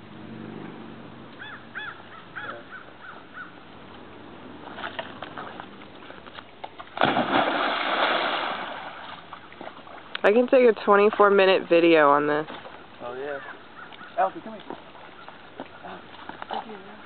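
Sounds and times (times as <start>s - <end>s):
dog splashing into water: 6.8s - 10.1s.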